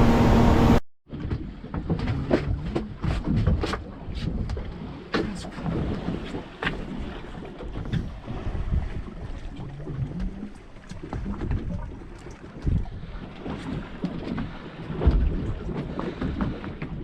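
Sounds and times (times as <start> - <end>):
water washing around hull: 0.0 - 17.0
wind buffeting microphone: 5.6 - 10.4.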